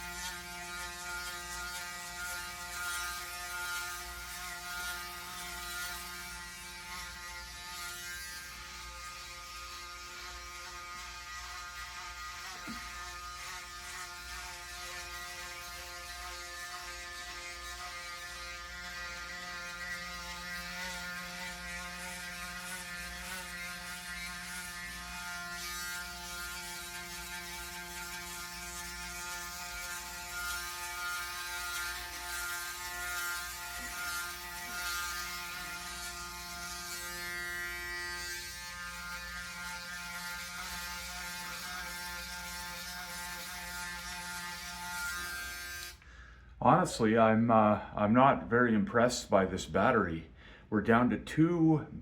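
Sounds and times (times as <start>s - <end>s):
electric shaver buzzing: 0.0s - 46.3s.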